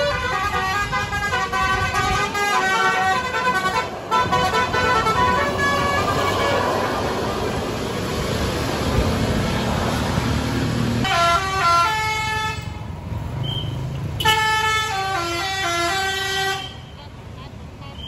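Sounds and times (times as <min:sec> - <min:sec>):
bus musical horn tune: 0:00.0 - 0:06.7, 0:11.0 - 0:12.8, 0:14.2 - 0:17.1
loud rushing noise: 0:01.2 - 0:11.1.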